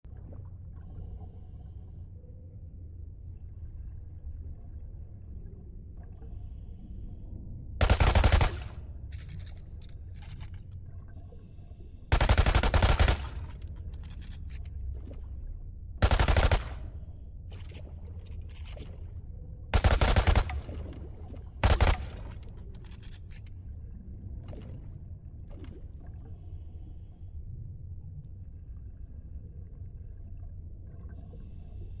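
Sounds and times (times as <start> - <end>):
low rumble: 0.0 - 32.0
submarine gun rapid fire: 7.8 - 8.8, 12.1 - 13.6, 16.0 - 16.9, 19.8 - 20.8, 21.6 - 22.3.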